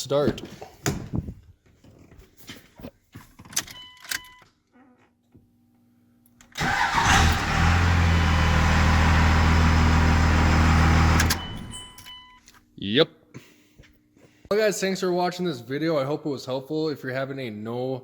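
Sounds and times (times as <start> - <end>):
diesel engine starting and idling: 6.6 - 12.0.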